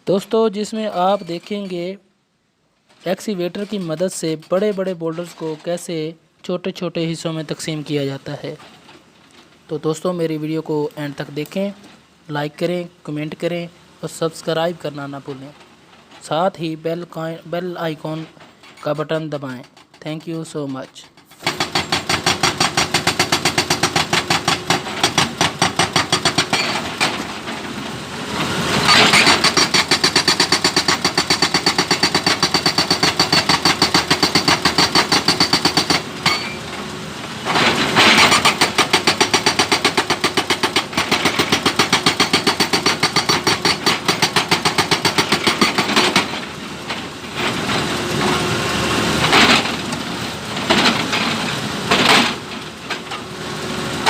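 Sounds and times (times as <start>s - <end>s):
hydraulic breaker hammering stone: 21.3s - 27.4s, 28.8s - 36.6s, 37.5s - 46.6s
excavator engine running: 21.3s - 54.0s.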